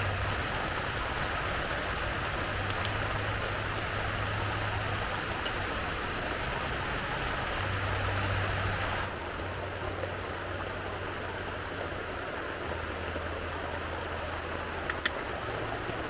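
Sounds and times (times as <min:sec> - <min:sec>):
steady rain: 0:00.0 - 0:16.0.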